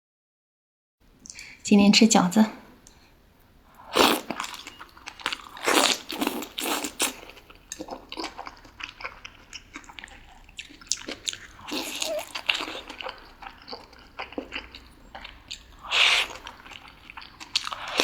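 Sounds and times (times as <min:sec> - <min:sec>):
wet biting and chewing: 0:03.8 - 0:18.0.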